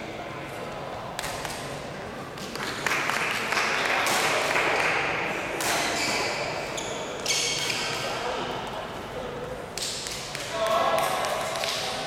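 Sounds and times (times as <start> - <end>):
noisy hubbub: 0.0 - 12.0
shoe squeak on court: 5.8 - 8.0.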